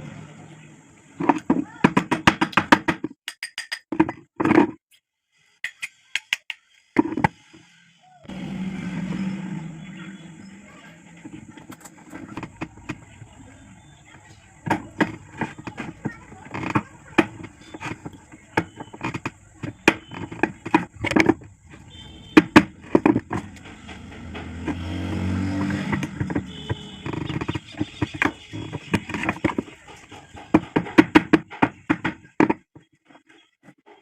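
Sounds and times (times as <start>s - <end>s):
tools and metal parts knocking: 1.2s - 4.7s, 14.2s - 32.8s
low hum: 8.3s - 12.4s.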